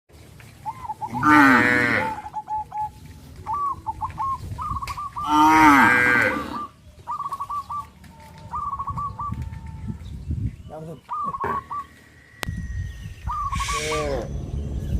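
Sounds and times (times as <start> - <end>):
cow mooing: 1.1 - 2.2, 5.2 - 6.7, 13.6 - 14.4.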